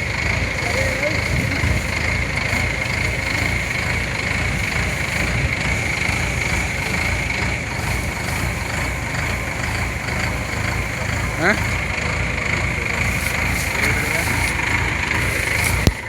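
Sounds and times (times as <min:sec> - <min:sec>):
combine harvester running: 0:00.0 - 0:16.0.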